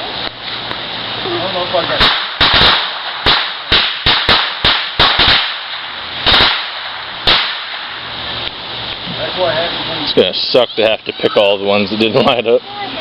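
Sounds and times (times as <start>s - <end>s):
firecrackers banging: 1.7s - 9.8s.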